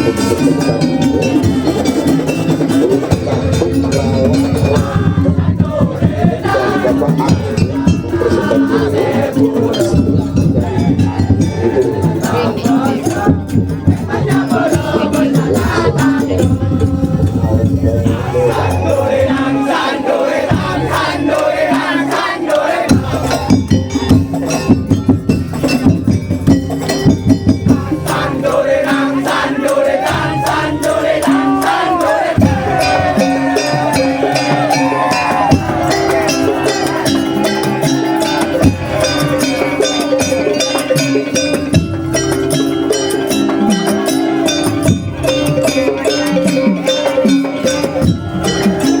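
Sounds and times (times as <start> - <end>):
crowd noise: 0.0 - 49.0
drums and rattling percussion: 0.0 - 49.0.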